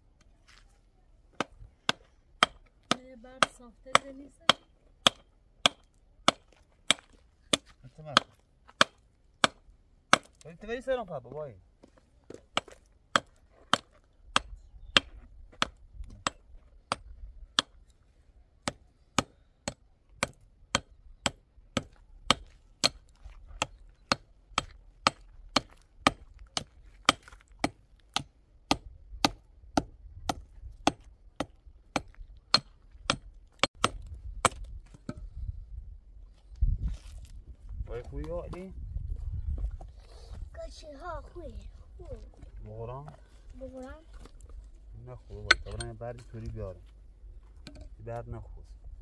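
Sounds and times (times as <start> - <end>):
wood being chopped by hand: 1.4 - 10.4, 12.4 - 17.8, 18.6 - 35.3.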